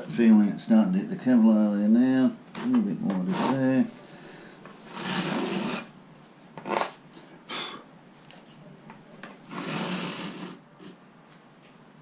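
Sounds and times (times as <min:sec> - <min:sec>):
blade scraping along a rule: 0:02.6 - 0:03.9, 0:04.9 - 0:05.9, 0:09.5 - 0:10.6.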